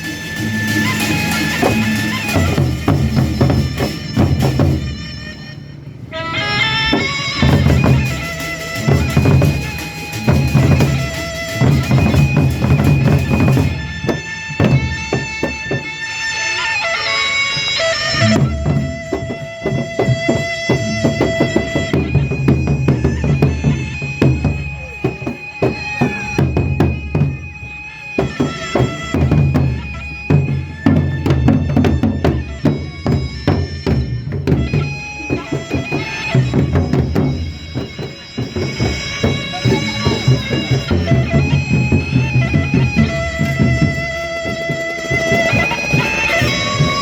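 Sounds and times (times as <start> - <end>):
dense drumming: 0.0 - 5.1, 6.9 - 15.9, 28.2 - 47.0
reedy wind instrument: 0.0 - 47.0.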